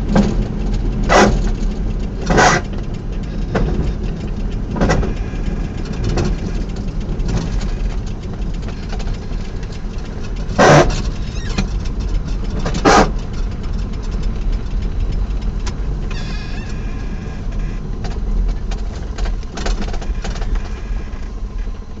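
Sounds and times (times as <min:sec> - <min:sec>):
car engine rumbling: 0:00.0 - 0:22.0
brief squeal: 0:16.1 - 0:17.8.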